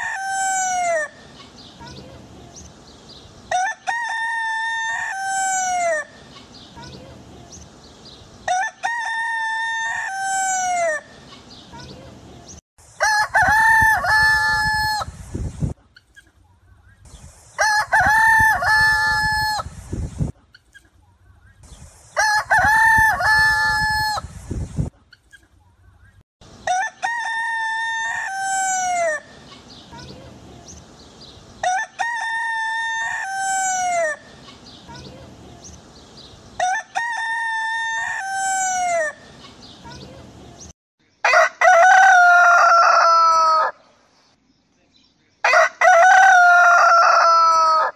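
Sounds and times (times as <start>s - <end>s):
rooster crowing: 0.0s - 1.2s, 3.5s - 6.1s, 8.5s - 11.1s, 13.0s - 15.1s, 26.6s - 29.3s, 31.6s - 34.2s, 36.6s - 39.2s, 41.2s - 43.8s, 45.4s - 47.9s.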